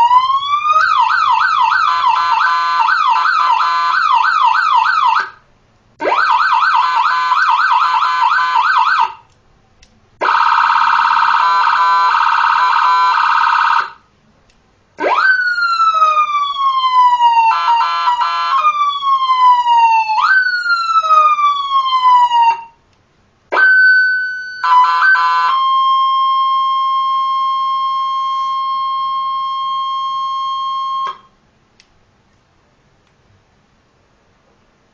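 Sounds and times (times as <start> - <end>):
electronic siren: 0.0 - 5.4, 6.0 - 9.2, 10.2 - 14.0, 15.0 - 22.8, 23.5 - 31.3.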